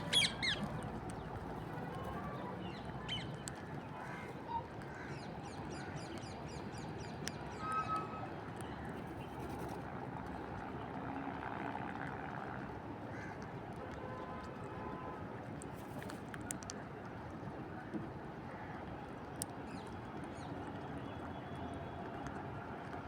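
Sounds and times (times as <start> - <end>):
parrots squawking: 0.0 - 0.8.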